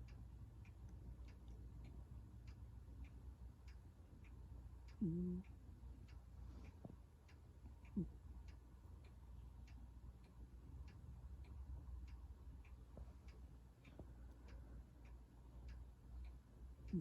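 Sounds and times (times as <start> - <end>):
faint regular ticking: 0.0 - 17.0
low steady hum: 0.0 - 17.0.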